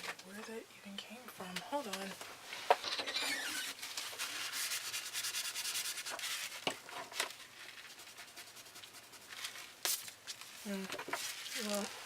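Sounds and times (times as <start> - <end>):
eraser rubbing on paper: 3.5 - 6.6, 7.7 - 9.6.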